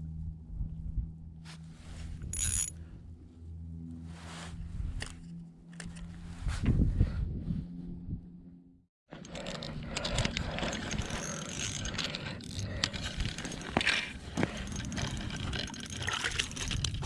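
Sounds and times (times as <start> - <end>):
fishing reel cranking: 2.4 - 2.7, 9.2 - 17.0.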